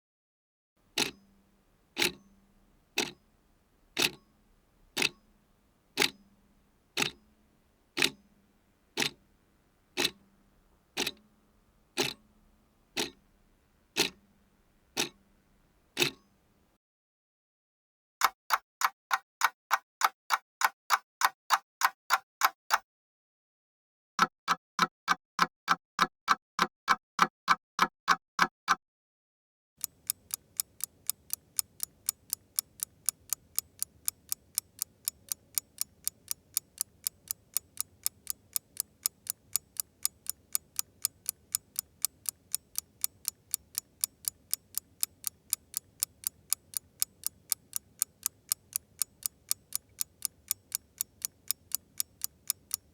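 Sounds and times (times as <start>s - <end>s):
clock ticking: 0.8s - 16.6s, 29.8s - 52.9s
faint background hiss: 0.8s - 16.8s, 29.8s - 52.9s.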